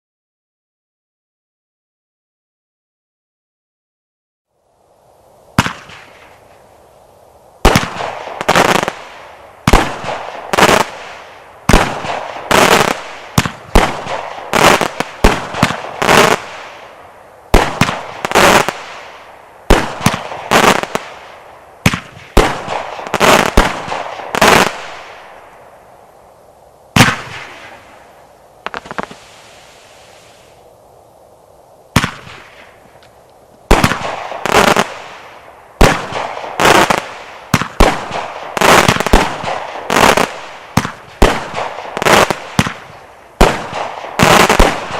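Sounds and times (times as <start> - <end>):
firework bangs: 5.6 - 6.4, 7.6 - 25.6, 26.9 - 30.6, 31.9 - 32.9, 33.7 - 44.9
firework crackling and fizzing: 7.6 - 25.8, 26.9 - 30.6, 33.6 - 44.9.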